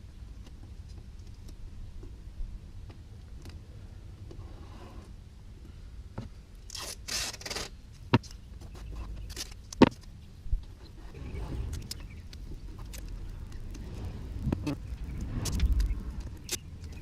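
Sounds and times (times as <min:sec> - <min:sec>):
masking tape ripping: 0:06.7 - 0:07.8.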